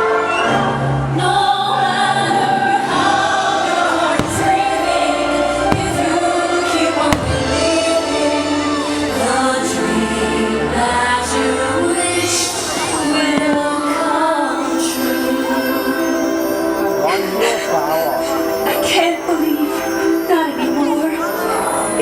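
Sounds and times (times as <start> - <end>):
music with choir singing: 0.0 - 22.0
firework bangs: 4.0 - 9.6, 12.2 - 15.7.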